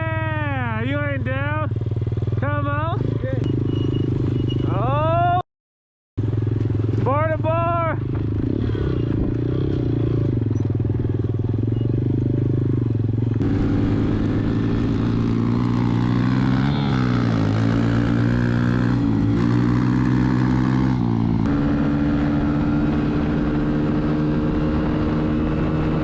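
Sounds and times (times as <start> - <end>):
small motorbike engines running: 13.0 - 26.0.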